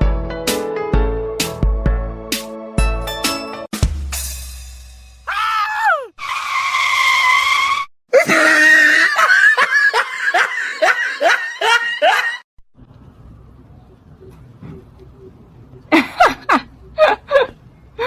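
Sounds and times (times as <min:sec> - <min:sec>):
shrill falling cry: 0:05.3 - 0:06.2
high scream: 0:05.3 - 0:09.2.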